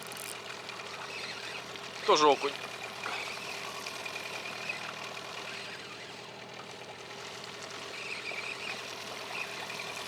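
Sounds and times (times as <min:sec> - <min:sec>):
outboard motor humming: 0:00.0 - 0:06.4.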